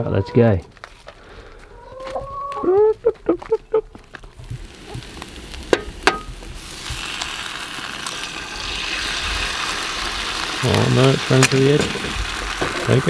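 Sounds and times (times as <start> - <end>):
eggs sizzling in a pan: 4.3 - 13.0.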